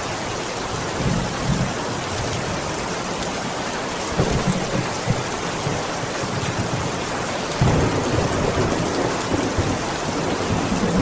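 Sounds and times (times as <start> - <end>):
heavy rain on a window: 0.0 - 11.0
thunder rumble: 7.6 - 11.0.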